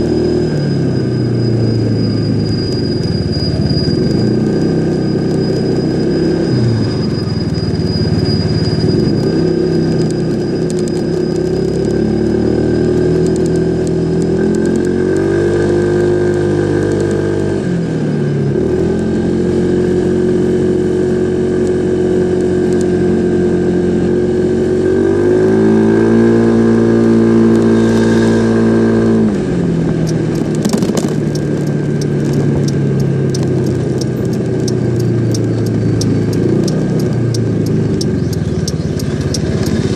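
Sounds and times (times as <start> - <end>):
faint high whine: 0.0 - 13.2, 25.8 - 33.3
scooter engine revving: 3.6 - 39.9.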